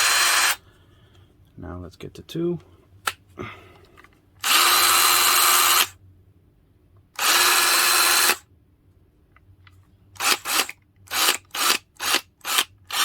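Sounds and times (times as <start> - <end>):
cordless drill motor whine: 0.0 - 0.6, 4.4 - 5.9, 7.2 - 8.4, 10.2 - 13.0.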